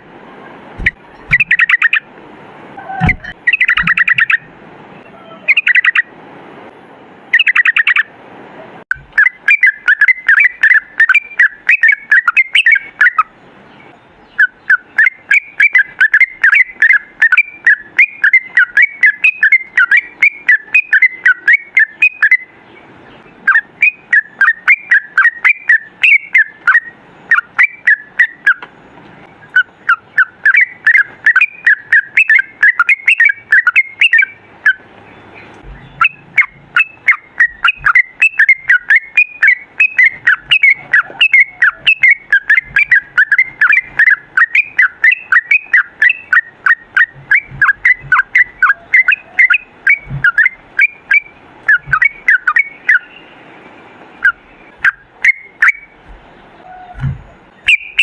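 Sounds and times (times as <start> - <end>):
bulbul singing warbling notes: 0.8 - 2.0, 2.8 - 4.5, 35.6 - 53.2, 54.2 - 56.0, 57.7 - 58.0.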